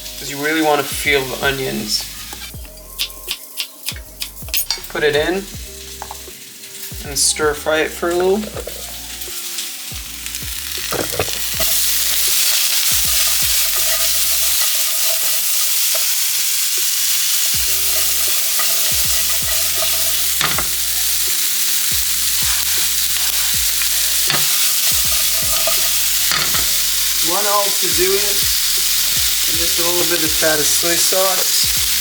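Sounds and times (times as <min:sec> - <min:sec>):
vegetables sizzling in oil: 0:00.0 - 0:32.0
utensil knocking against pan: 0:17.6 - 0:20.8, 0:24.3 - 0:26.8.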